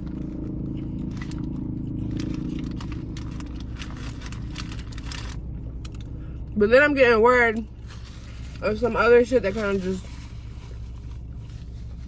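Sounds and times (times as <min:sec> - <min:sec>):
chewing and food crackles: 0:00.0 - 0:06.6
steady low hum: 0:00.0 - 0:12.0.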